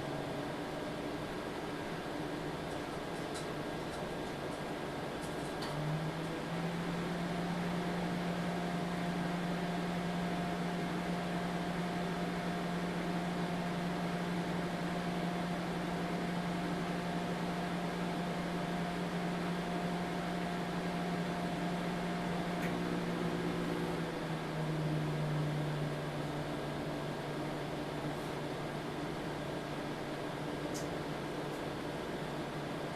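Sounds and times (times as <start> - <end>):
microwave oven humming: 0.0 - 32.9
faint click: 30.7 - 30.9.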